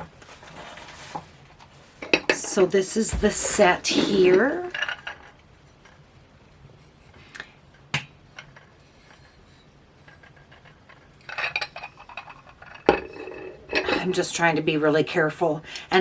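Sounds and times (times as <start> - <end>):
clattering and rustling: 0.0 - 5.4.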